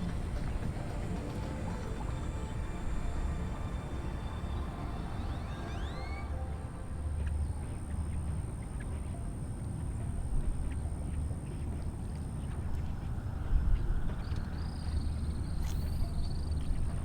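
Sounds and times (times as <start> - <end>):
low rumbling noise: 0.0 - 8.6.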